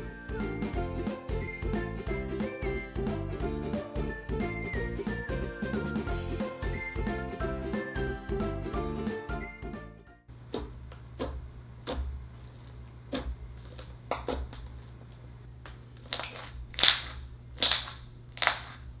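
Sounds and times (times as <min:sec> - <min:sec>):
slime popping and clicking: 0:16.0 - 0:18.9.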